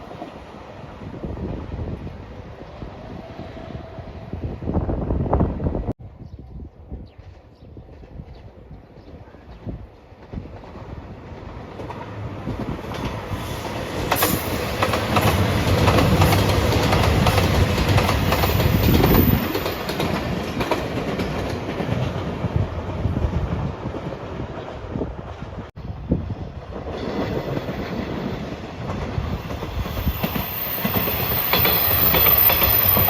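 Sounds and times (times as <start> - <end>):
train wheels clacking on rails: 10.1 - 22.5, 26.8 - 33.0.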